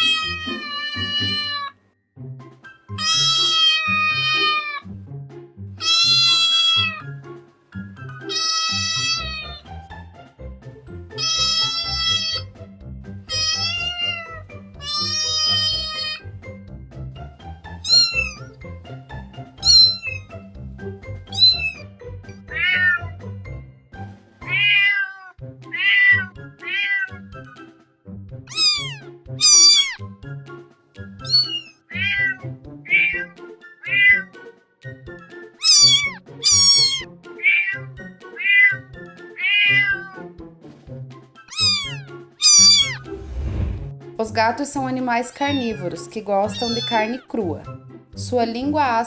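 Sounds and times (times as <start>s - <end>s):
cats meowing: 0.0s - 1.8s, 3.0s - 4.8s, 5.8s - 7.1s, 8.2s - 9.7s, 11.2s - 12.5s, 13.3s - 16.3s, 17.8s - 18.5s, 19.6s - 20.3s, 21.3s - 21.9s, 22.5s - 23.2s, 24.4s - 27.3s, 28.5s - 30.0s, 31.2s - 34.4s, 35.6s - 40.3s, 41.5s - 43.1s, 46.5s - 47.3s.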